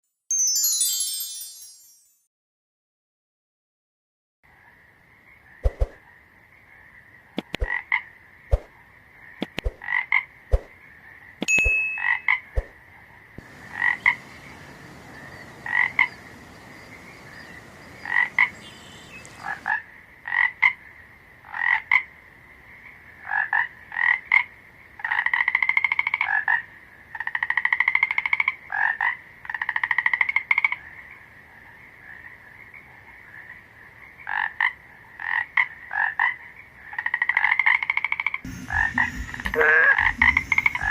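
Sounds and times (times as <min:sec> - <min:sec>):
frogs croaking: 0:04.5 - 0:11.4, 0:12.1 - 0:40.9
faint hiss: 0:13.4 - 0:19.6.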